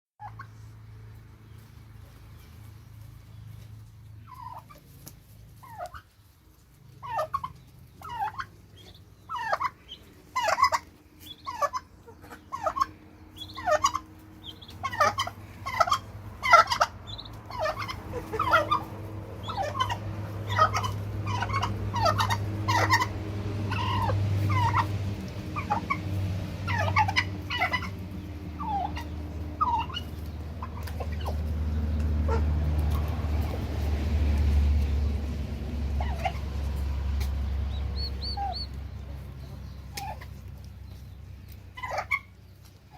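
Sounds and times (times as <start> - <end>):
turkeys gobbling and calling: 0.2 - 0.7, 2.4 - 42.9
low rumble: 13.0 - 41.7.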